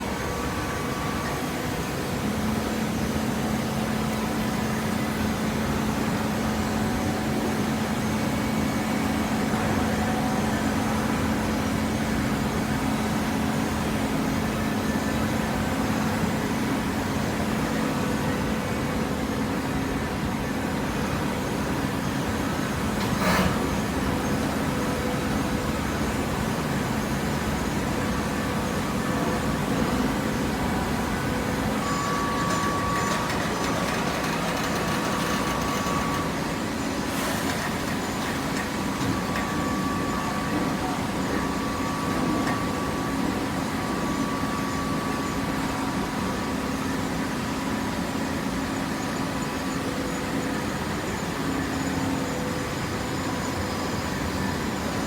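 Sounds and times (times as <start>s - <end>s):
machinery humming: 0.0s - 55.0s.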